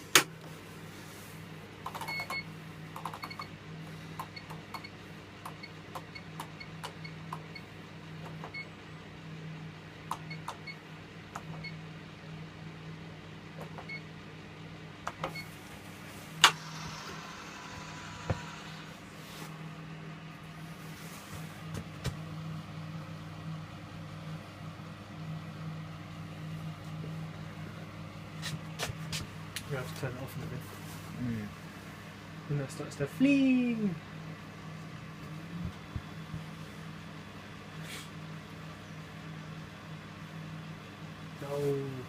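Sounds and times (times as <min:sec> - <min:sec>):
washing machine hum: 0:00.0 - 0:42.0.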